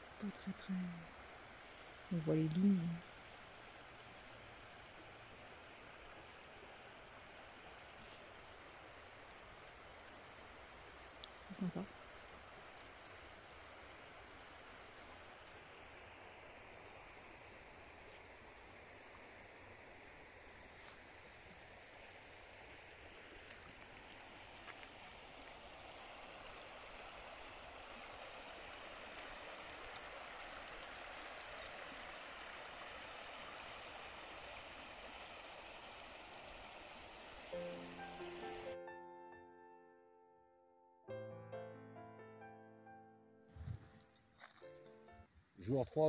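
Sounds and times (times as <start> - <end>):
stream flowing over stones: 0.0 - 38.7
faint bird chirps: 30.9 - 31.8, 37.8 - 38.8.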